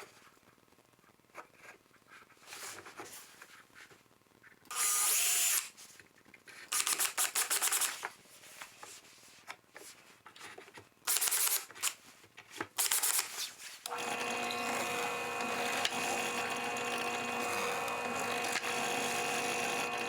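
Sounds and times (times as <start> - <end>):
power drill running: 13.9 - 20.0.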